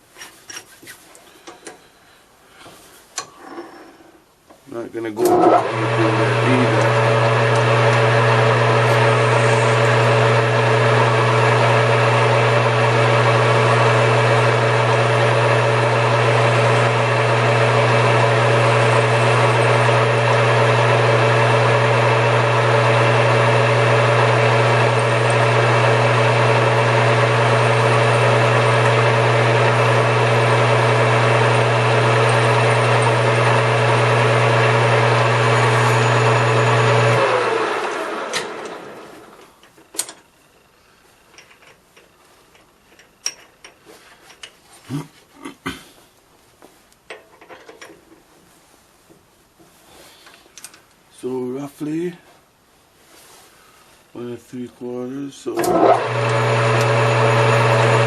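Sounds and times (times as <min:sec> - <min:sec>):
lathe motor humming and whining: 0:05.2 - 0:39.4, 0:55.6 - 0:58.0.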